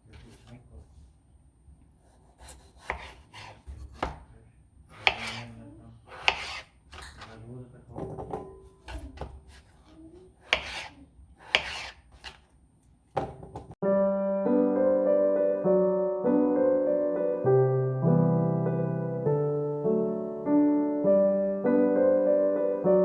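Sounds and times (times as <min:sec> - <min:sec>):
knife chopping on cutting board: 0:02.2 - 0:04.3, 0:04.9 - 0:07.4, 0:08.0 - 0:12.5.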